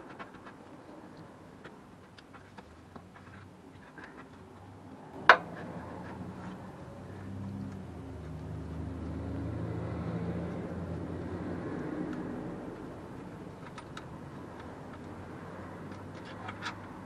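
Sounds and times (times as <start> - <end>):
passing vehicle engine hum: 4.6 - 17.0.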